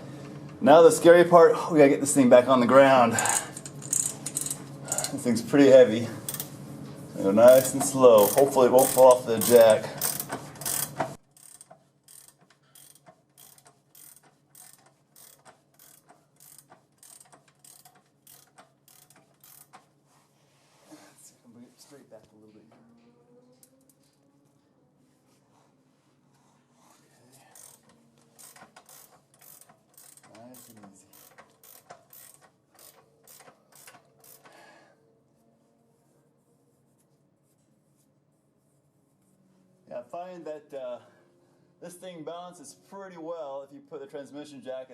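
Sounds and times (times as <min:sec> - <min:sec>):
transmission jack ratcheting click: 0:03.2 - 0:05.2, 0:07.5 - 0:19.9, 0:27.6 - 0:34.6.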